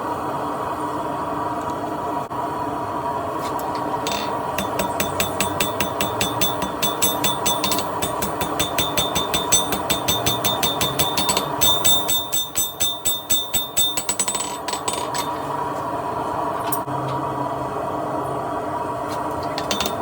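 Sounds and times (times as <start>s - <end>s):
steady background roar: 2.2s - 20.0s
hammer ringing on anvil: 4.1s - 15.4s, 19.6s - 20.0s.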